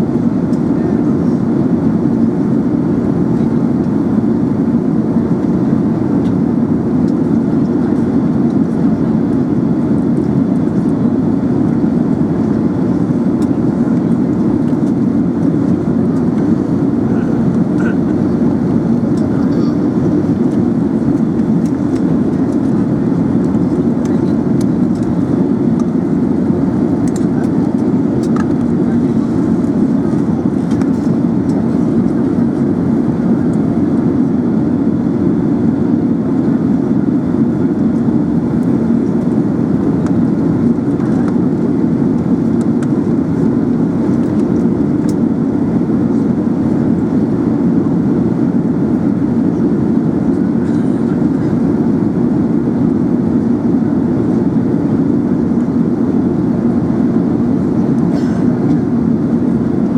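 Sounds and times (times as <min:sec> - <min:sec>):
aircraft cabin drone: 0:00.0 - 0:59.9.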